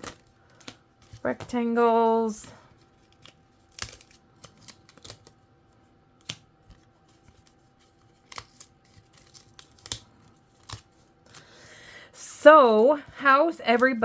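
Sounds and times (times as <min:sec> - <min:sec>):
paper snaps and taps: 0:03.1 - 0:05.3, 0:06.2 - 0:07.5, 0:08.1 - 0:11.4.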